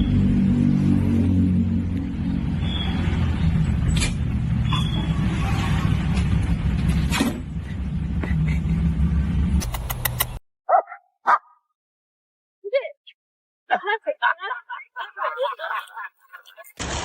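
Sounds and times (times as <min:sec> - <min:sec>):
dog barking: 0:10.7 - 0:11.6.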